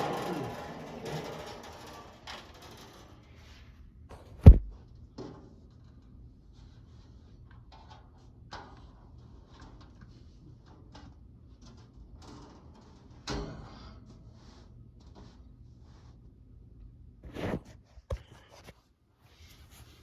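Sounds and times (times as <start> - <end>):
metal fan being handled: 0.0 - 3.4
heavy thump: 4.2 - 4.7.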